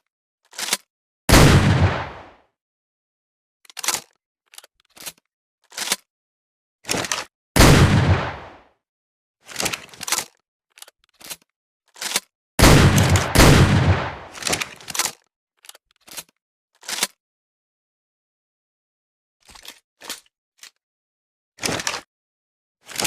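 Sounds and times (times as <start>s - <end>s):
shotgun blasts: 1.3s - 2.4s, 7.6s - 8.6s, 12.6s - 14.5s
gun handling clicks: 9.6s - 17.2s.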